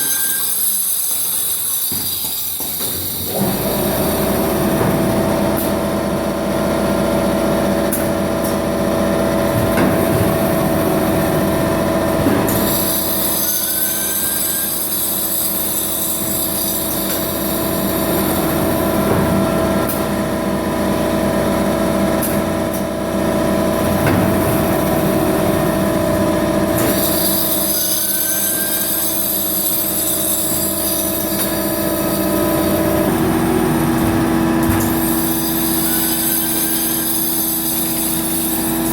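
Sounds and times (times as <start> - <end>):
machine hum with whine: 2.8 - 38.9.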